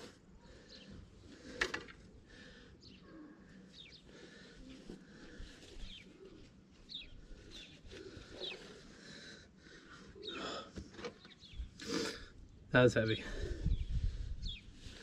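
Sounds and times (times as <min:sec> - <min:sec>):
small birds chirping: 0:00.1 - 0:01.6, 0:02.3 - 0:15.0
breathy rustle: 0:02.3 - 0:11.0.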